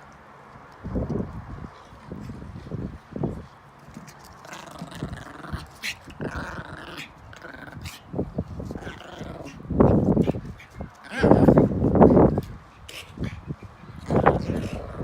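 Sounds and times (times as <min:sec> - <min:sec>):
dogs growling in play: 0:03.9 - 0:15.0.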